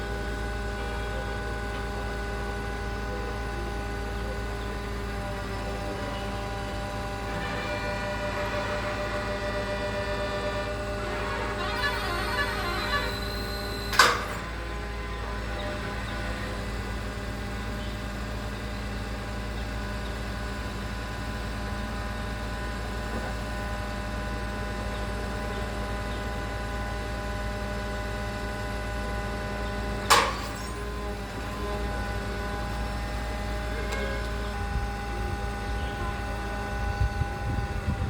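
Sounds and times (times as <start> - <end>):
concrete pump engine running: 0.0 - 38.0
sharp metal clank: 30.1 - 30.9.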